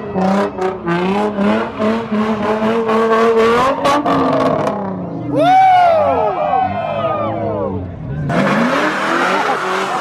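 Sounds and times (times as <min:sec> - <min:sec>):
car engine revving hard: 0:00.2 - 0:04.9, 0:08.2 - 0:10.0.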